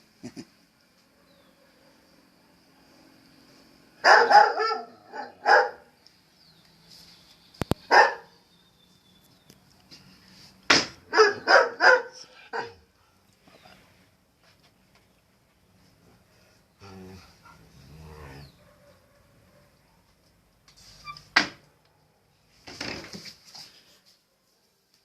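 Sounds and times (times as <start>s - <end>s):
dog barking: 4.0s - 5.9s, 7.9s - 8.4s, 11.1s - 12.9s, 18.5s - 20.1s.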